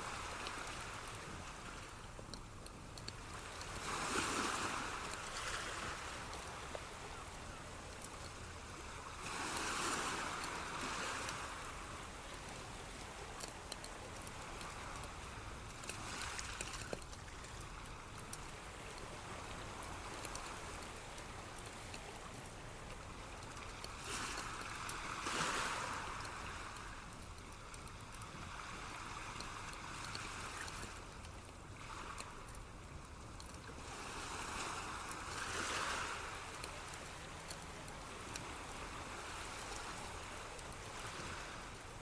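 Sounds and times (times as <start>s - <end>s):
water trickling: 0.0s - 42.0s
water rushing: 3.2s - 27.2s.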